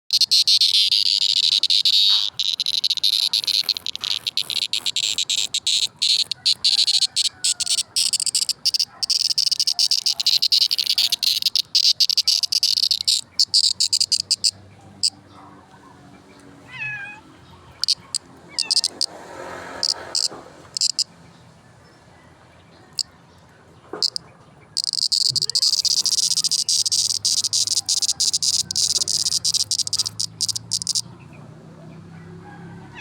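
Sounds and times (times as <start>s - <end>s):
insect buzzing in rapid pulses: 0.1s - 14.5s, 17.8s - 21.1s, 24.0s - 24.2s, 24.8s - 31.0s.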